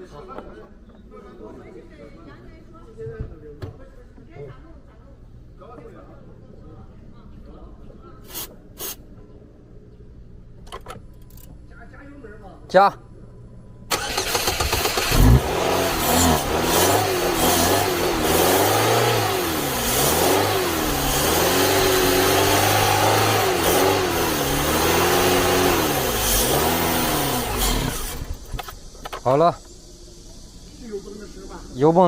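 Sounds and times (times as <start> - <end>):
car engine revving: 13.9 - 28.9
car engine cranking: 13.9 - 29.8.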